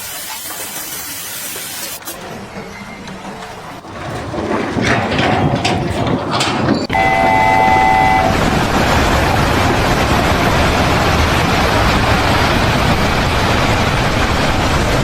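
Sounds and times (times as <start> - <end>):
steady heavy noise: 3.7 - 15.0
horn: 6.9 - 8.5
loud rising noise: 6.9 - 15.0.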